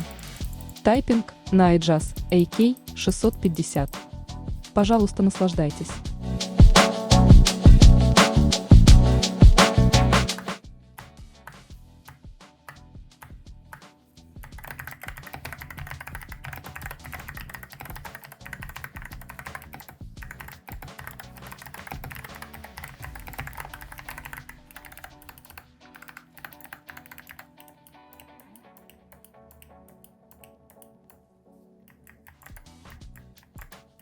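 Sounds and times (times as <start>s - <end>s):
mechanical keyboard typing clicks: 14.4s - 31.2s, 31.9s - 33.8s.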